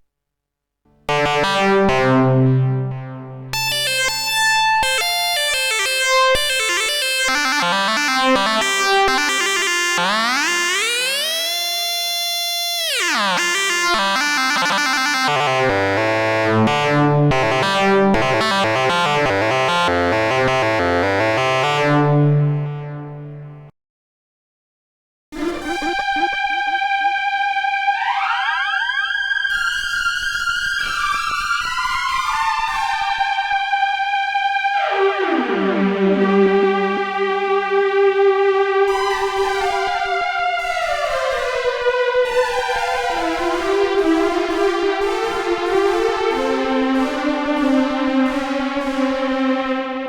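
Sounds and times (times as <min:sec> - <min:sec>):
synthesizer buzzy notes: 0:01.1 - 0:23.7, 0:34.8 - 0:50.0.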